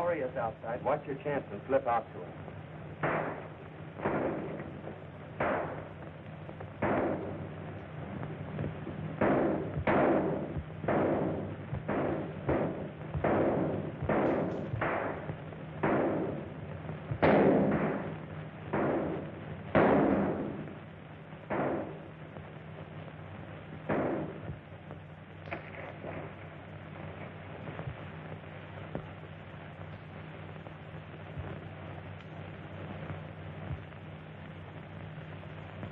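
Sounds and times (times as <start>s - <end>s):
soundtrack hum: 0.0s - 35.9s
gunshots: 3.0s - 20.8s, 21.5s - 22.1s, 23.9s - 24.6s.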